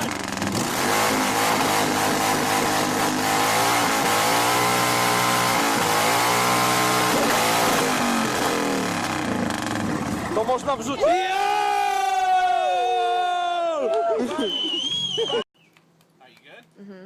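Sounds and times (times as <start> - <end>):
engine revving hard: 0.0 - 10.4.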